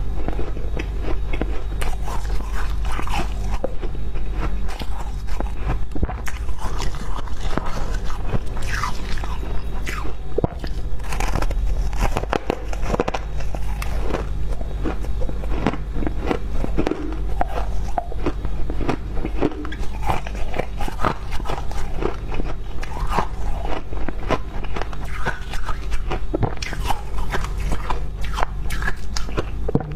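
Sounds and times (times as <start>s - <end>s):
steady low hum: 0.0s - 29.9s
frost crunching: 0.3s - 29.4s.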